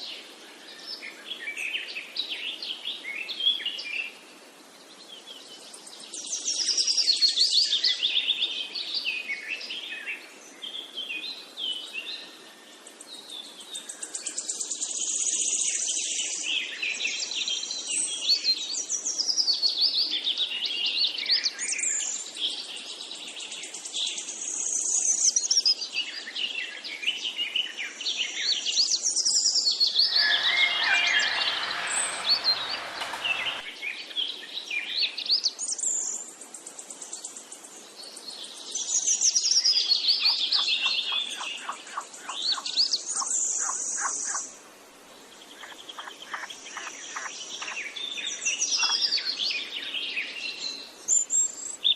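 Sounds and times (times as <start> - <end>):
songbirds singing: 27.6 - 35.8, 38.0 - 44.5, 45.2 - 51.9.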